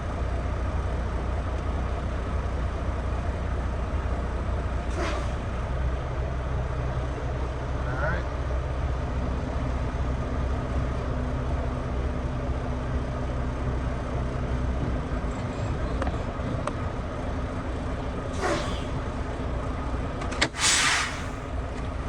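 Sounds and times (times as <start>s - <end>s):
diesel engine idling: 0.0s - 22.0s
short hiss: 4.9s - 5.5s, 18.4s - 19.0s, 20.5s - 21.5s.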